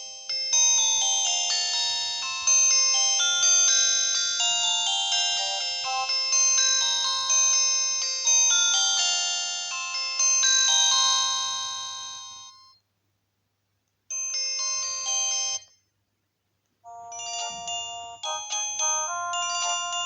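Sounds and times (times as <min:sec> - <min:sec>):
electronic phone ringtone melody: 0:00.0 - 0:12.8, 0:16.9 - 0:20.0
short phone chime: 0:16.9 - 0:20.0.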